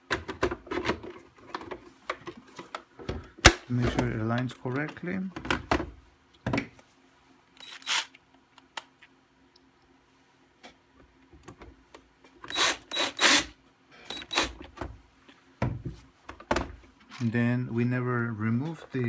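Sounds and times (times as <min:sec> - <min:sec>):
plastic parts knocking and scraping: 0:00.0 - 0:06.8.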